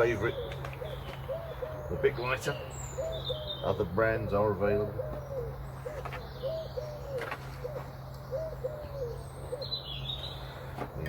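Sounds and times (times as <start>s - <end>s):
pigeon cooing: 0.0s - 10.7s
small bird chirping: 5.0s - 10.7s.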